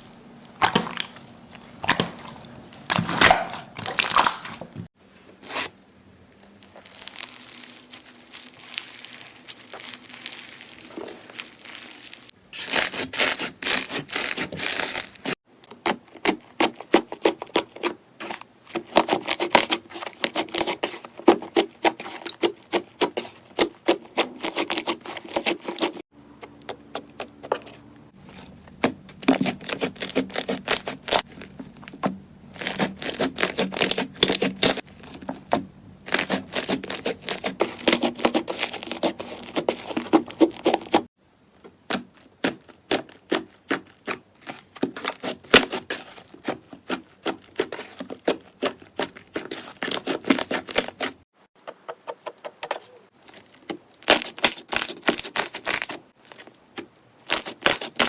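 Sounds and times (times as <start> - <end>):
slime crackling and popping: 6.4 - 15.4, 28.8 - 41.1, 41.8 - 51.0, 53.4 - 56.4, 57.3 - 58.0.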